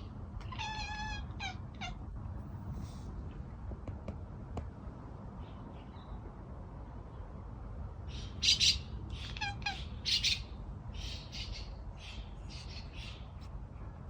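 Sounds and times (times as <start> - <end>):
birds chirping and squawking: 8.1 - 13.4.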